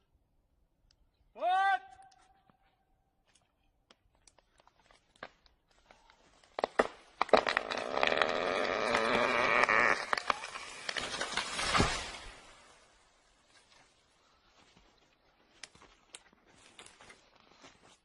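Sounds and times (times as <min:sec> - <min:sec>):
wood cracking: 0:04.2 - 0:12.7
wavering creak with snapping: 0:07.2 - 0:11.6.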